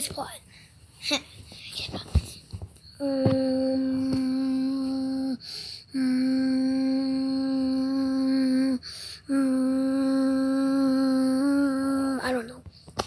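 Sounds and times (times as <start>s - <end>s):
person humming: 3.0s - 12.4s
person breathing: 5.4s - 6.0s, 8.8s - 9.3s.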